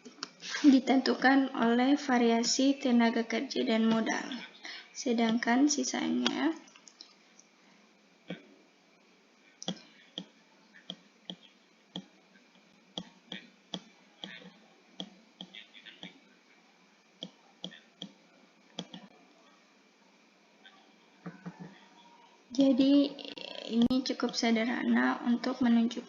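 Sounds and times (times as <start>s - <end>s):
computer mouse clicking: 17.2s - 19.1s.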